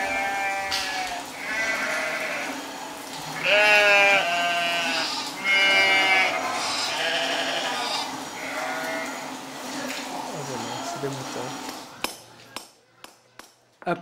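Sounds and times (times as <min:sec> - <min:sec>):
sheep bleating: 0:00.0 - 0:02.6, 0:03.3 - 0:09.4, 0:10.5 - 0:11.2.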